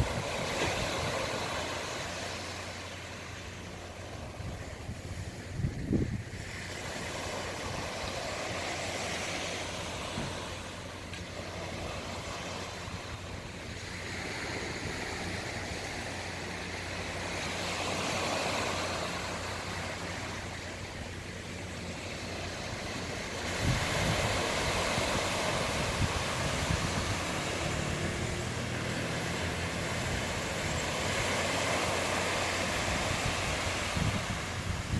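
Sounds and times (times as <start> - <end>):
wind buffeting microphone: 0.0 - 1.4, 4.2 - 6.6, 23.3 - 31.3, 31.9 - 34.9
sea waves washing ashore: 0.0 - 34.9.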